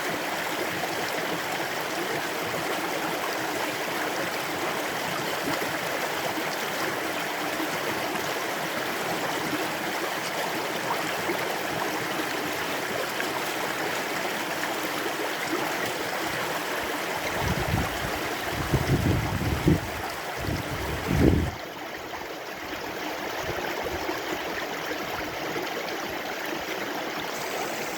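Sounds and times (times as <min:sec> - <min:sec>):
stream rapids rushing: 0:26.1 - 0:27.9.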